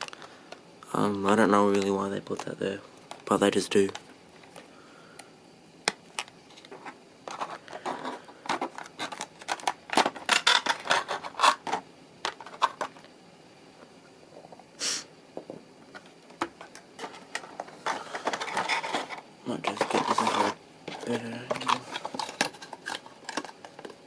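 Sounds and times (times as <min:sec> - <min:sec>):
packaging scratches and clicks: 0:05.9 - 0:12.9, 0:16.5 - 0:24.0
brief hiss: 0:14.8 - 0:15.1.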